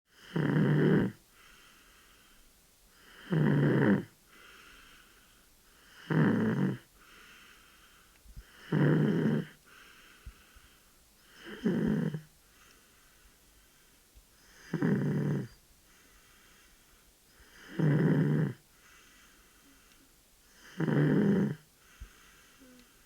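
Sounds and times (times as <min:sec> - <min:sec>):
baby snoring: 0:00.2 - 0:01.2, 0:03.0 - 0:04.1, 0:05.9 - 0:06.9, 0:08.4 - 0:09.6, 0:11.3 - 0:12.3, 0:14.5 - 0:15.6, 0:17.4 - 0:18.6, 0:20.5 - 0:21.6
soft breathing: 0:01.3 - 0:03.2, 0:04.3 - 0:06.0, 0:07.0 - 0:08.8, 0:09.5 - 0:11.7, 0:12.4 - 0:17.8, 0:18.6 - 0:23.0.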